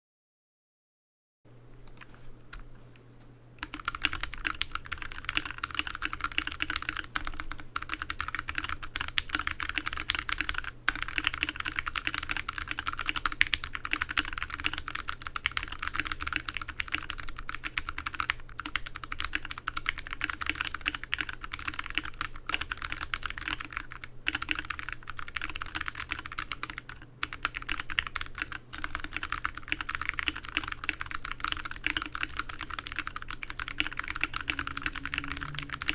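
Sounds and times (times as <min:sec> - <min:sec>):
fast mechanical keyboard typing: 0:03.6 - 0:35.9.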